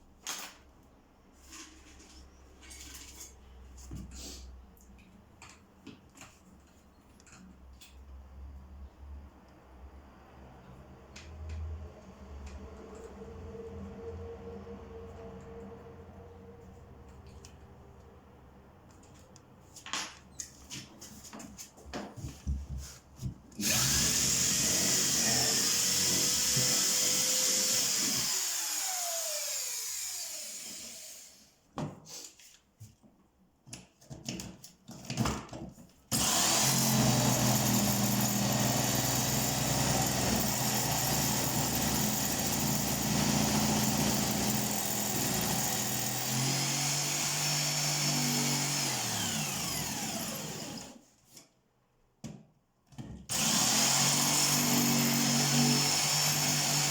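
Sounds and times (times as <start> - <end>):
electric power tool running: 23.6 - 31.3, 36.1 - 51.0, 53.3 - 56.9.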